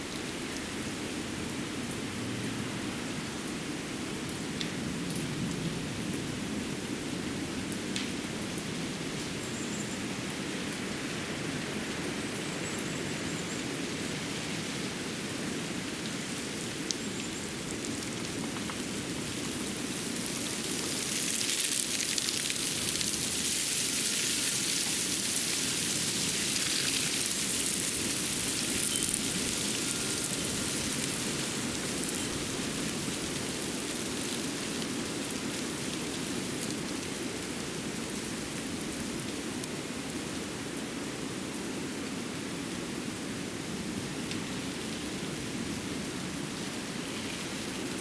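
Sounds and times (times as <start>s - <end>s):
steady rushing hiss: 13.3s - 48.0s.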